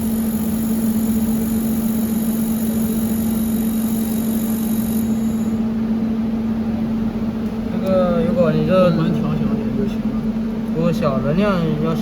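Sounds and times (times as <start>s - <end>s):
welding machine hum: 0.0s - 8.0s.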